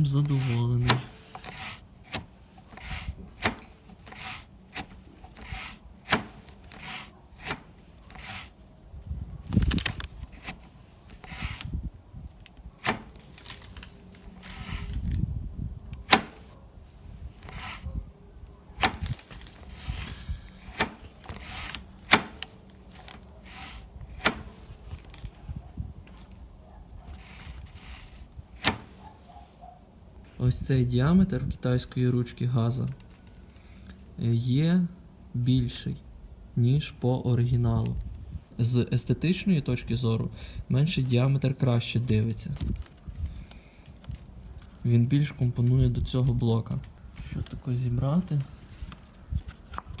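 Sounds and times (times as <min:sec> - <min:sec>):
rubbing or scraping: 0:00.0 - 0:08.6, 0:09.5 - 0:11.8, 0:12.8 - 0:15.2, 0:16.1 - 0:18.0, 0:18.8 - 0:25.2, 0:27.0 - 0:29.3.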